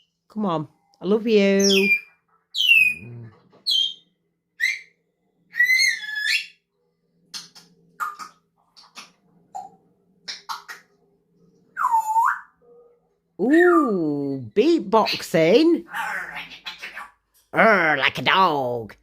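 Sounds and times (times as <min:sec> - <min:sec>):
parrot whistling: 0:01.6 - 0:04.0, 0:04.6 - 0:06.6, 0:11.8 - 0:12.6.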